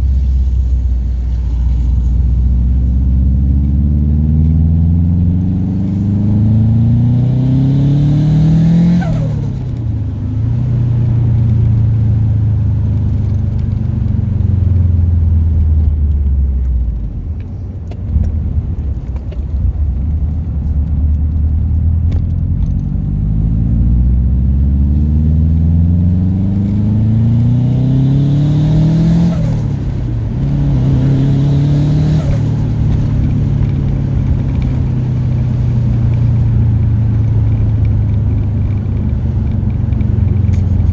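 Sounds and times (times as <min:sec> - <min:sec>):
turbocharged car engine revving: 0:00.0 - 0:12.2, 0:22.0 - 0:40.9.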